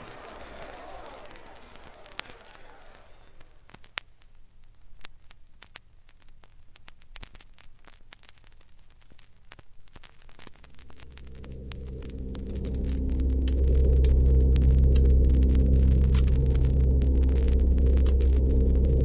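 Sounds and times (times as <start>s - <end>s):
vinyl record crackle: 0.0s - 19.0s
faint low hum: 10.6s - 19.0s.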